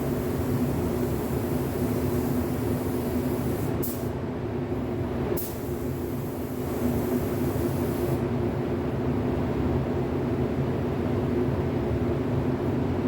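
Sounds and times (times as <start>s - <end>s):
spray gun air hiss: 0.0s - 4.2s, 5.4s - 8.2s
mechanical drone of ventilation: 0.0s - 13.0s.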